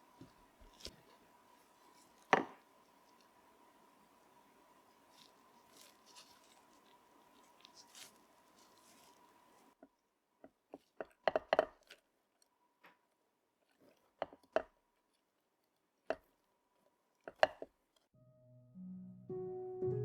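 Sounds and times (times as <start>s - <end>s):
faint steady hum: 0.0s - 9.8s
small objects clicking and tapping: 10.7s - 12.0s
soft plucked background music: 18.2s - 20.0s.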